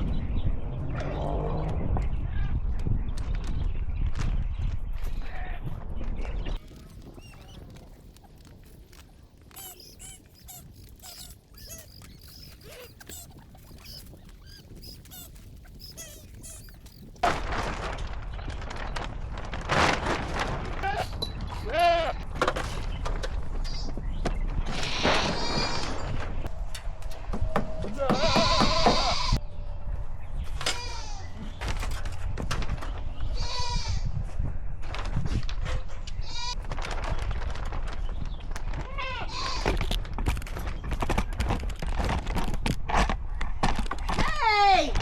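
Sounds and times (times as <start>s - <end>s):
chicks peeping: 6.6s - 17.2s
farm animal calls: 6.6s - 17.2s.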